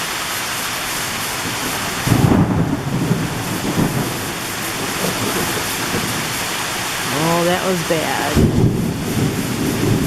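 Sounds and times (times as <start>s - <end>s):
heavy rain hissing: 0.0s - 10.0s
thunder crack and rumble: 1.4s - 7.0s, 8.4s - 10.0s.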